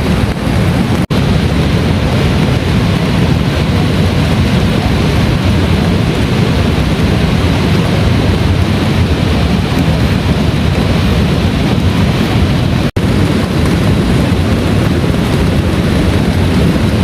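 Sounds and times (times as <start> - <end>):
heavy rain pouring: 0.0 - 17.0
low rumble: 0.0 - 17.0.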